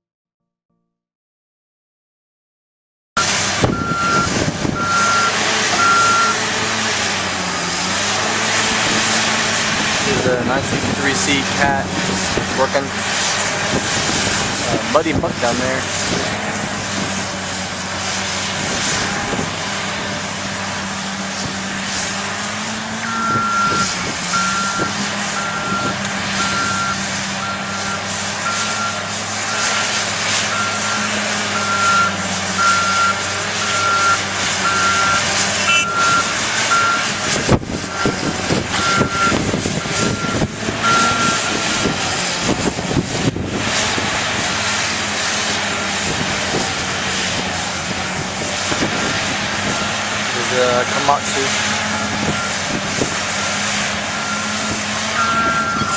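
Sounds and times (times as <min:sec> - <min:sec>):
diesel engine working: 0:03.2 - 0:55.9
backup alarm beeping: 0:23.0 - 0:29.0, 0:31.6 - 0:37.0, 0:38.8 - 0:41.9, 0:55.2 - 0:55.9.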